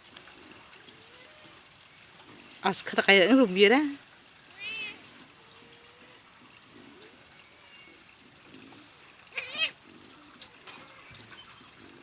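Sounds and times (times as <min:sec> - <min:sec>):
kitten meowing: 0:04.6 - 0:05.0, 0:09.3 - 0:09.8.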